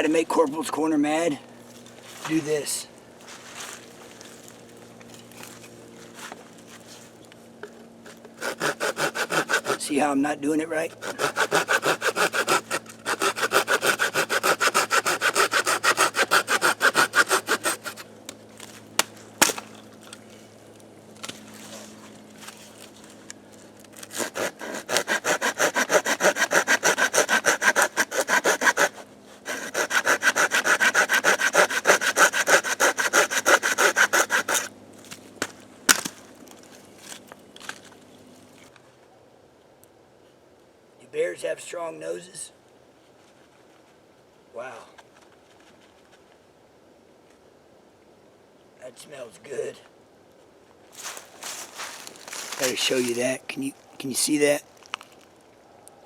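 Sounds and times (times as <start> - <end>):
hand saw cutting wood: 8.1 - 10.1, 10.7 - 18.1, 24.0 - 34.7, 51.0 - 53.3.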